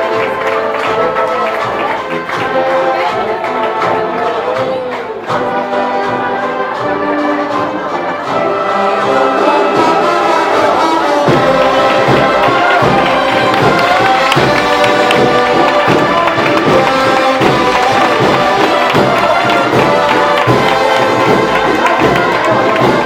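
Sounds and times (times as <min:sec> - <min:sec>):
brass band playing: 0:00.0 - 0:23.0.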